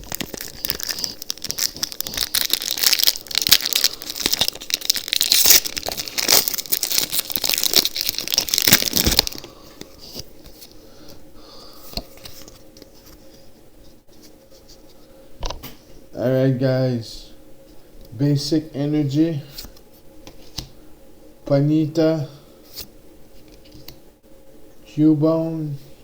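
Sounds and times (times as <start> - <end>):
foil wrapper crinkling and tearing: 0.0 - 9.5.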